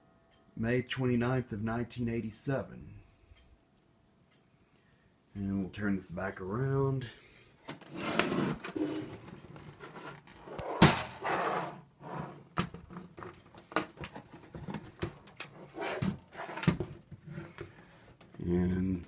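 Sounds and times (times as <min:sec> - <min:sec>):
loud thunk: 0:10.8 - 0:11.2.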